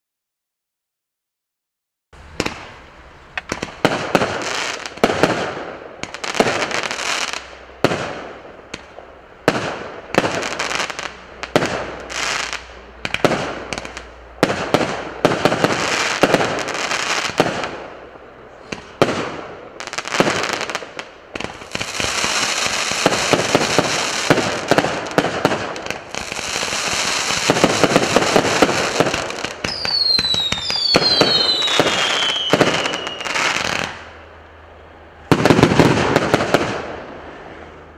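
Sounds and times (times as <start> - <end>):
fireworks launching and bursting: 2.2 - 34.3, 35.2 - 37.8
firework whistles falling in pitch: 29.6 - 33.9.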